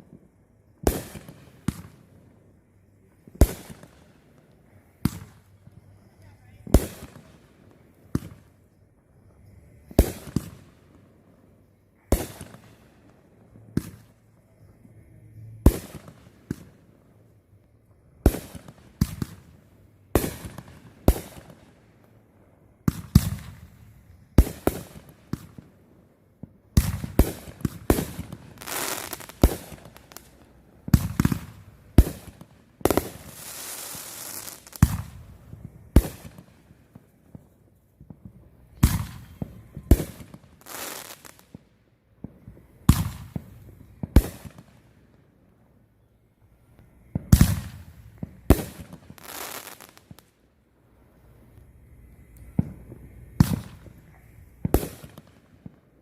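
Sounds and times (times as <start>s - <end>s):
fireworks banging: 9.4s - 10.6s, 26.8s - 41.6s, 46.8s - 50.3s, 52.0s - 55.8s
fireworks hissing: 27.0s - 36.5s, 38.8s - 41.4s, 47.2s - 50.2s.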